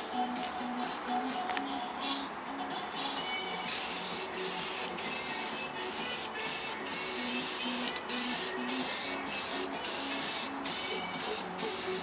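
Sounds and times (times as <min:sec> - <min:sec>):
faint background music: 0:00.0 - 0:12.0
aerosol can spraying: 0:03.6 - 0:12.0.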